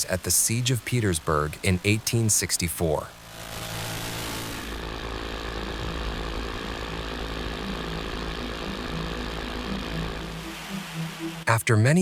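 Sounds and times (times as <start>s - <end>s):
aircraft engine running: 3.1s - 11.5s.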